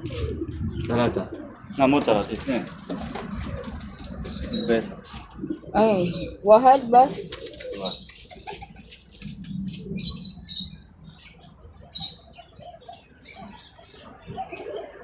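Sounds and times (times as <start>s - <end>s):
rustling in nest: 0.0s - 10.0s
pigeons squeaking: 0.0s - 15.0s.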